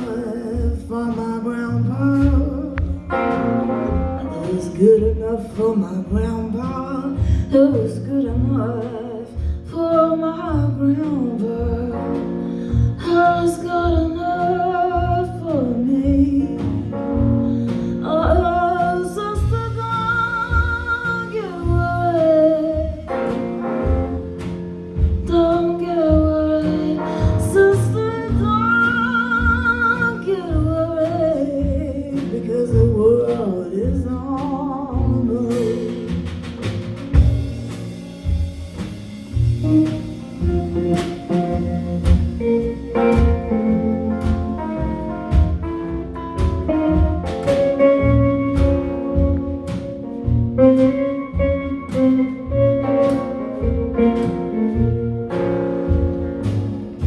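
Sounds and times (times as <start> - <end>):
jazz-blues band playing: 0.0 - 57.0
plucked notes: 0.0 - 57.0
bass pulse: 30.5 - 57.0
sliding melodic lead: 34.3 - 57.0.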